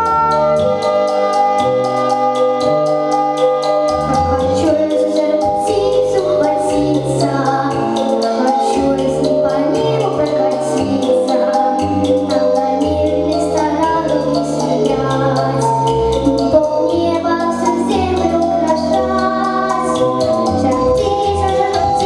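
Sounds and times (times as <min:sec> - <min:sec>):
backing track with bass notes: 0:00.0 - 0:22.0
girl singing: 0:04.0 - 0:22.0.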